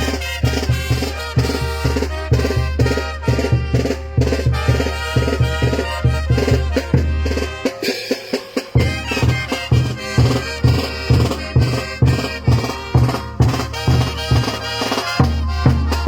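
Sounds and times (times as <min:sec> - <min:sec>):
bass drum beat: 0:00.0 - 0:07.8, 0:08.7 - 0:16.0
wind instruments playing a tune: 0:00.0 - 0:16.0.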